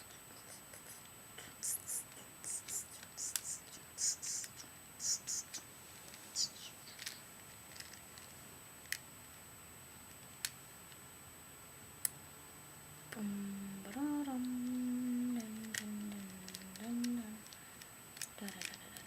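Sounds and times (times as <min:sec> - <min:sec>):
puzzle cube layers clicking: 0:01.7 - 0:05.6, 0:06.4 - 0:08.3, 0:14.5 - 0:17.6, 0:18.2 - 0:19.0
person humming long notes: 0:13.1 - 0:17.4.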